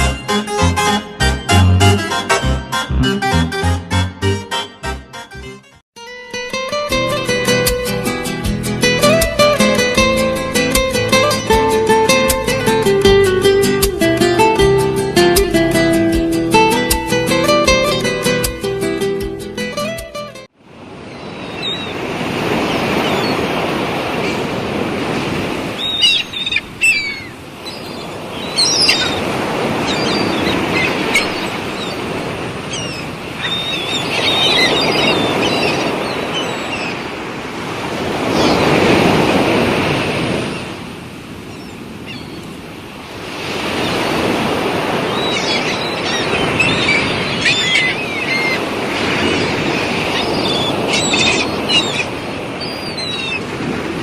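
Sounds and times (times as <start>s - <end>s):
sea waves washing ashore: 6.5s - 19.2s, 20.4s - 54.0s
birds chirping: 21.0s - 23.6s, 25.6s - 37.2s, 38.1s - 39.2s, 41.4s - 42.6s, 43.5s - 53.6s.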